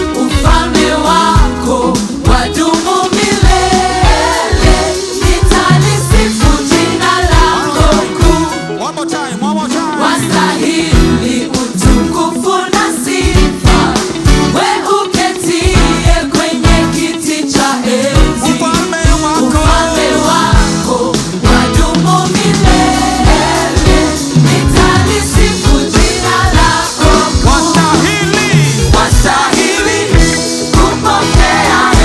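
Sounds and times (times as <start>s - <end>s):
steady drum beat: 0.0s - 8.6s, 10.2s - 32.0s
people singing: 0.0s - 32.0s.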